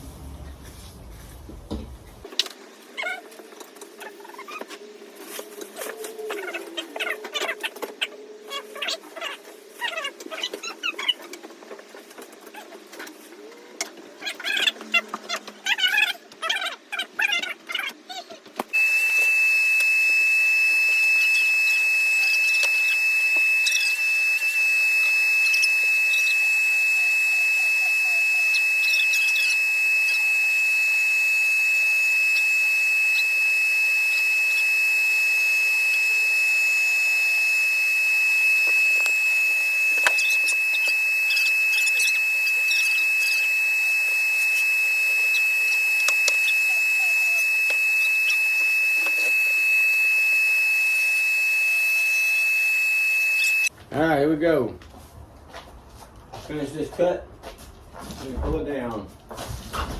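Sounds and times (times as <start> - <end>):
steady high-pitched tone: 18.8 - 53.7.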